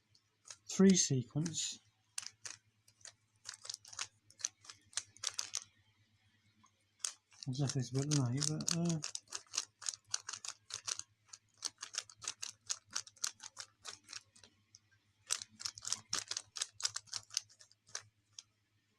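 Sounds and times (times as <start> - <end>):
puzzle cube clicking as turned: 2.2 - 5.7, 7.0 - 14.4, 15.3 - 18.5.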